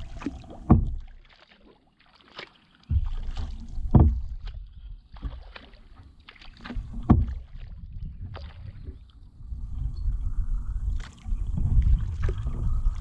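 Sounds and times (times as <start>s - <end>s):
paddle splashing in water: 0.0s - 13.0s
loud thumps: 0.6s - 1.1s.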